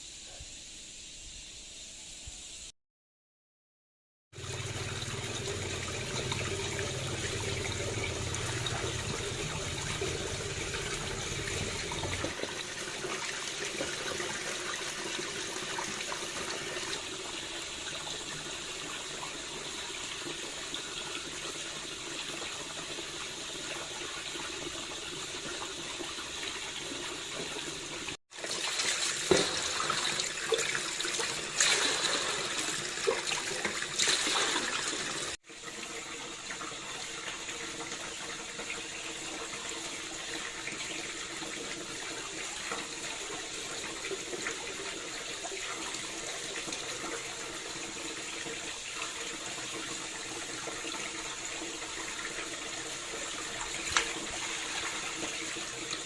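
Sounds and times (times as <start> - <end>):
water splashes: 4.4 - 17.2, 28.3 - 35.4, 53.3 - 56.0
water running: 4.4 - 56.0.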